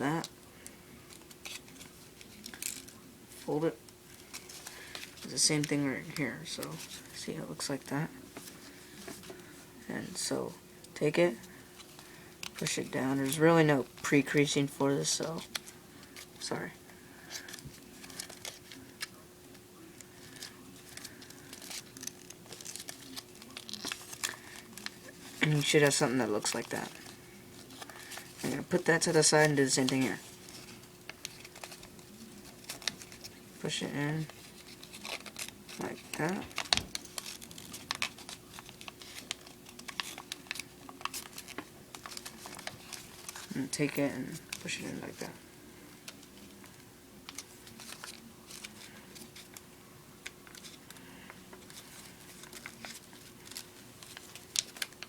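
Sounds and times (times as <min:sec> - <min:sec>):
paper rustling and crinkling: 0:01.0 - 0:10.3, 0:10.9 - 0:55.0.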